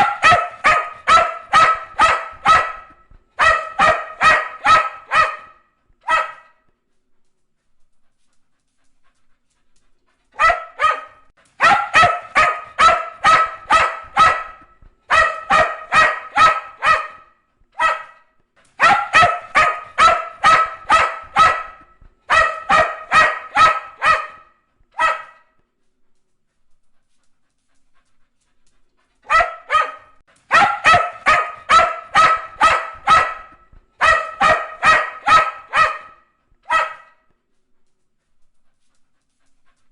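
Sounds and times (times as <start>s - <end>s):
dog barking: 0.0s - 6.7s, 10.4s - 25.6s, 29.2s - 37.3s.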